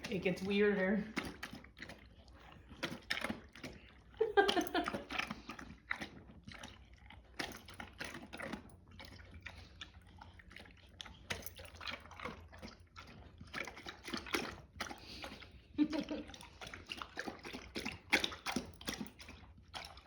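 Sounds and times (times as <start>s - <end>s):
dog slurping and chewing food: 0.0s - 20.0s.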